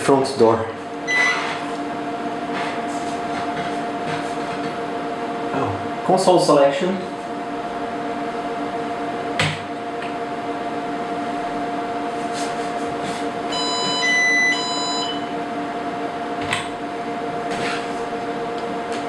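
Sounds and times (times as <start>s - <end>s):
computer cooling fans humming: 0.0s - 19.0s
three-tone electronic beeps: 1.1s - 1.4s, 13.5s - 15.3s.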